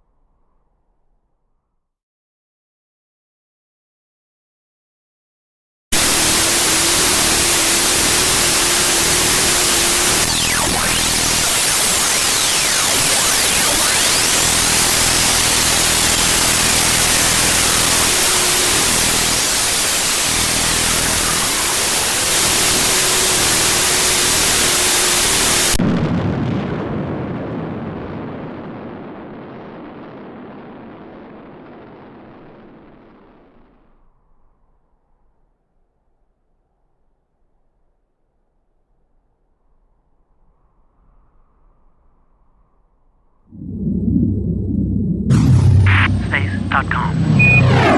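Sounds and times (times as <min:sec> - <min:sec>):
loud hissing static: 0:06.0 - 0:25.8, 0:45.3 - 0:47.6
faint gliding tones: 0:43.5 - 0:47.9
low rumble: 0:43.5 - 0:47.9.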